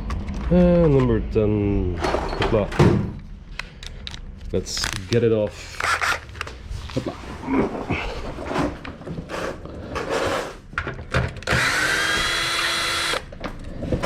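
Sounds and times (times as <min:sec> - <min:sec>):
power driver running: 0:11.4 - 0:13.3.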